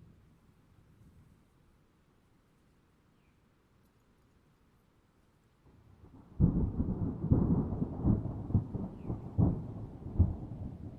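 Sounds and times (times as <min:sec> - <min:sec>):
thunder rumbling and cracking: 0:06.1 - 0:10.9.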